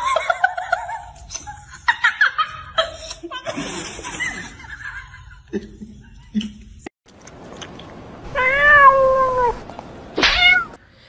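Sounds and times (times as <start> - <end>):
cat meowing: 8.3 - 9.6, 10.2 - 10.8.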